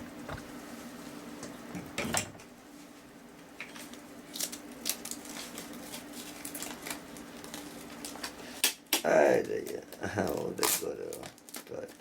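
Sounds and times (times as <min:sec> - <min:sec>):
faint steady hum: 0:00.0 - 0:12.0
sticky tape clicking and crackling: 0:03.6 - 0:12.0.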